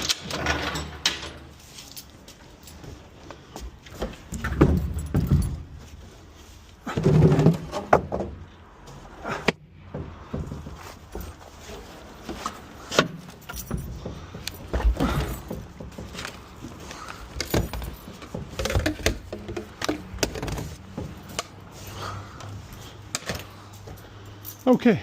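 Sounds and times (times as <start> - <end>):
junk knocking and rattling: 3.8 - 5.9, 6.8 - 11.6, 12.2 - 21.6.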